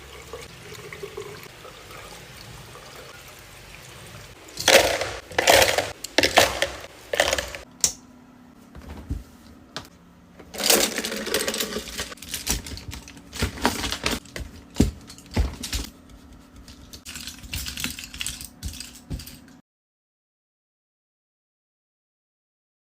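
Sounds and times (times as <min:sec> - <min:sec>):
brush bristles rubbed and tapped: 0:15.8 - 0:17.2.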